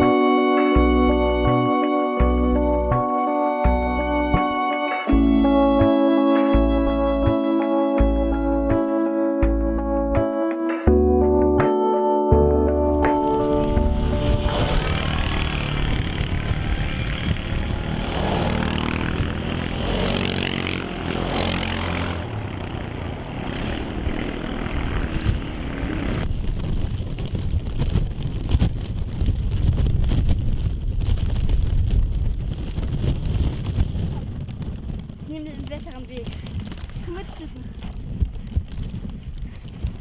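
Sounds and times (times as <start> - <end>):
blizzard wind buffeting microphone: 12.7 - 40.0.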